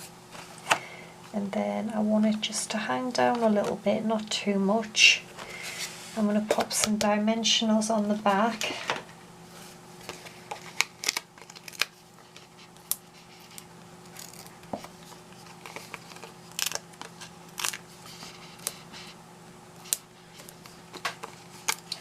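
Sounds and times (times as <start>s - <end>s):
card being handled: 10.0s - 18.9s.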